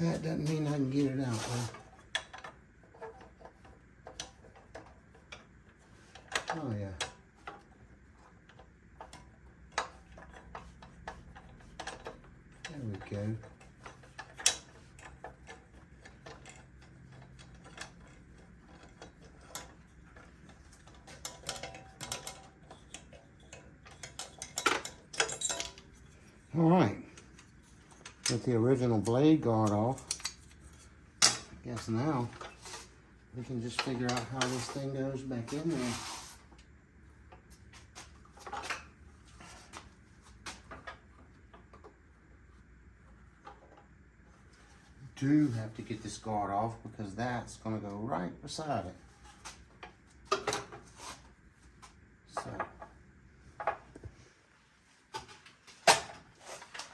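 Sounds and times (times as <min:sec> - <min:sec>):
hand tools clicking and clattering: 0:09.7 - 0:26.3.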